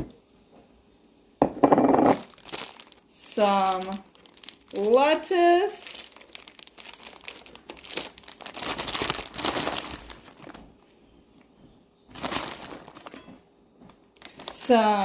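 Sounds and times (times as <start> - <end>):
plastic packaging crinkling: 2.1 - 10.8, 12.1 - 15.0.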